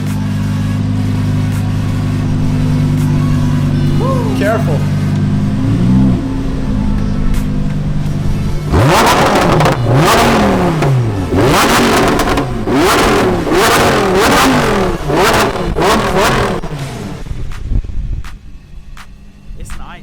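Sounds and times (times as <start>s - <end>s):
sports car engine accelerating: 0.0s - 19.7s.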